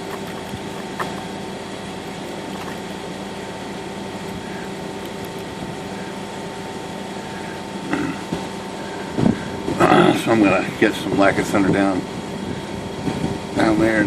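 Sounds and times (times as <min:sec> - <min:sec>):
motor humming: 0:00.0 - 0:09.8.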